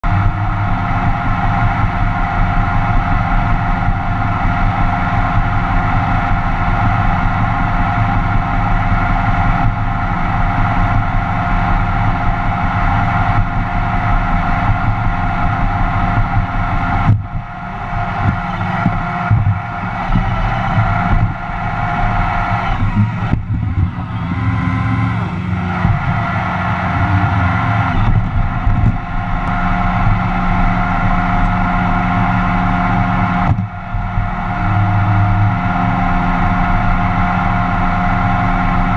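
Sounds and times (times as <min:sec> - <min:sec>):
low rumble: 0:00.0 - 0:38.9
robot vacuum motor whine: 0:15.0 - 0:33.5.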